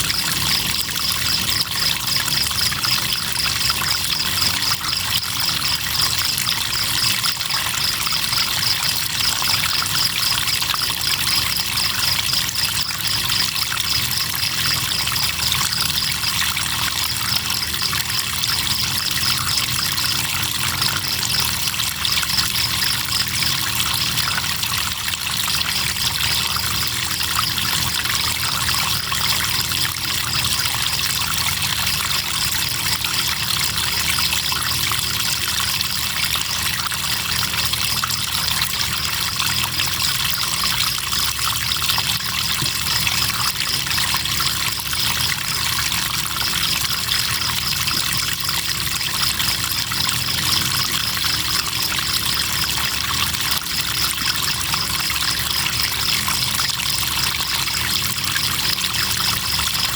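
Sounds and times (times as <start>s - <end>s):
crickets chirping: 0.0s - 59.9s
river water flowing: 0.0s - 59.9s.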